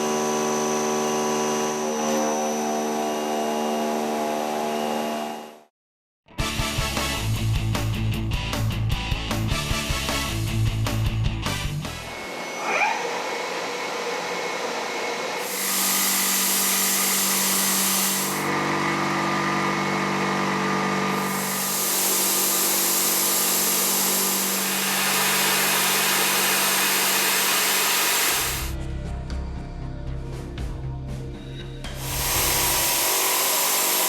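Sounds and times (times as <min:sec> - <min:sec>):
end mill cutting metal hiss: 0:15.4 - 0:18.5, 0:21.2 - 0:28.7, 0:32.0 - 0:34.0.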